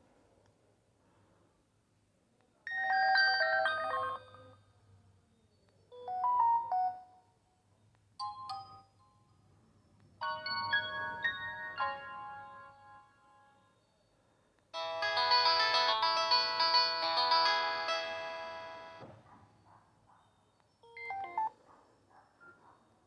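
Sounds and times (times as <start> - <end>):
polyphonic ringtone melodies: 2.7 - 4.6, 10.2 - 13.1, 14.8 - 19.0, 20.9 - 21.5.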